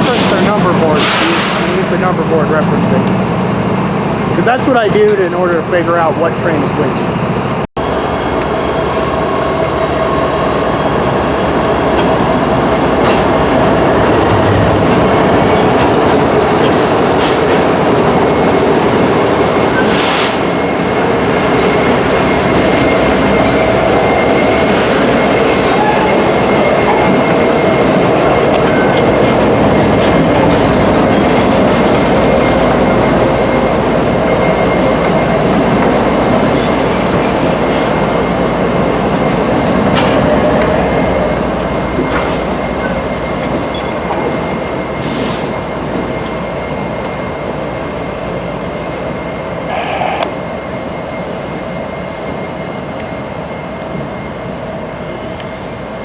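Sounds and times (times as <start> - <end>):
train wheels rumbling on rail: 0.0 - 56.0
wheels squealing on track: 18.5 - 38.4.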